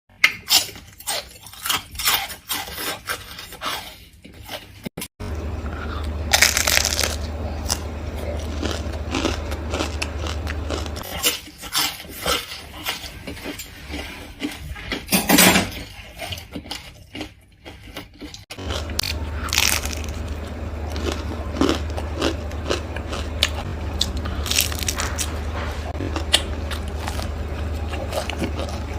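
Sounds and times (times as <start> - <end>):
crunching and chewing fried fish: 0.2 - 4.9, 5.8 - 28.9
low hum: 5.2 - 11.1, 18.5 - 28.9.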